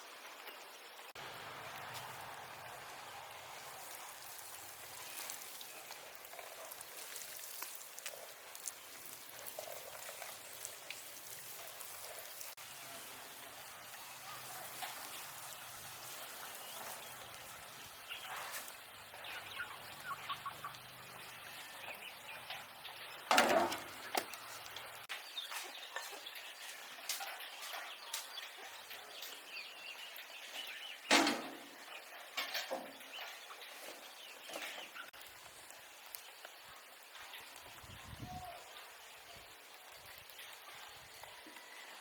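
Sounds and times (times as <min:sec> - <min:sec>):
birds chirping: 0:12.6 - 0:35.2
fowl calling: 0:18.3 - 0:22.0.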